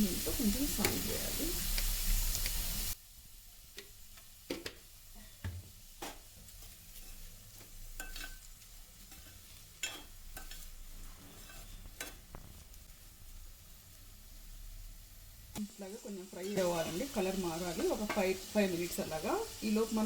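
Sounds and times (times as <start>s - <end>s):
onions sizzling in oil: 0.0s - 20.0s
utensil scraping a pan: 6.0s - 12.7s.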